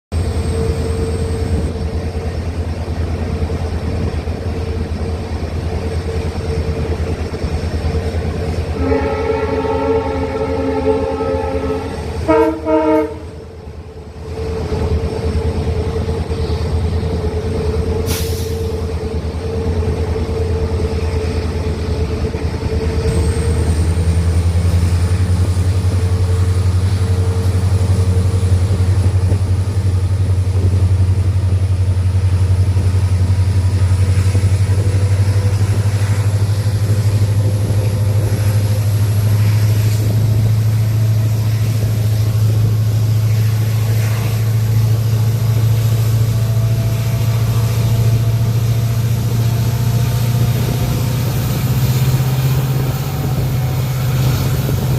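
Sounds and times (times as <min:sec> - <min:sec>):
locomotive engine humming: 0:00.1 - 0:54.9
horn blast: 0:08.7 - 0:13.4.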